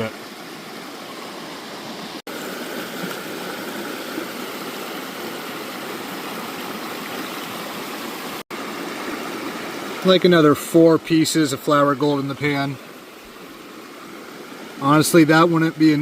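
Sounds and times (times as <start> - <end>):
stream water rushing: 0.0 - 16.0.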